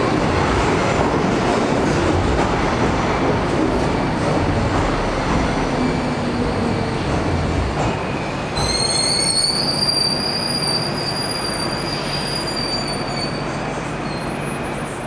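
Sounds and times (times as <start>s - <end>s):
train rumbling: 0.0s - 15.0s
high wheel squeal: 8.6s - 14.8s.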